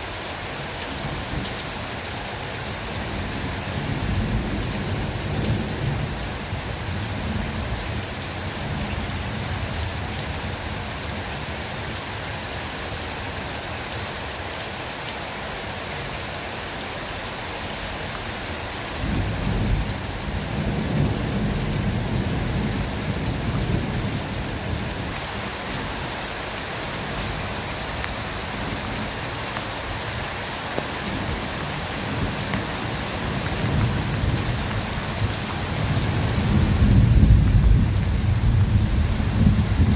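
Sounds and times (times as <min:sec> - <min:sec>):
rain falling in forest: 0:00.0 - 0:39.9
thunder rumbling: 0:19.0 - 0:25.2, 0:31.0 - 0:39.9.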